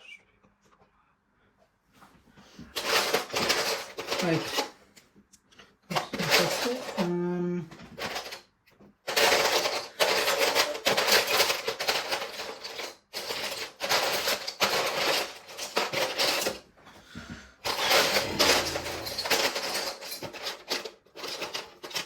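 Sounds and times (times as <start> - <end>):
plastic bricks clattering: 2.8 - 4.7, 5.9 - 7.2, 9.1 - 16.6, 17.6 - 22.0.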